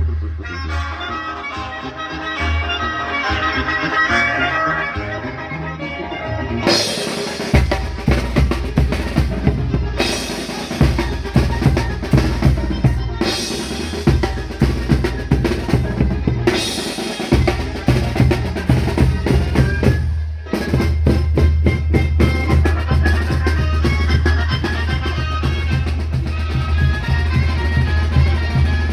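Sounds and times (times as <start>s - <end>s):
drum kit beating: 6.7s - 28.9s.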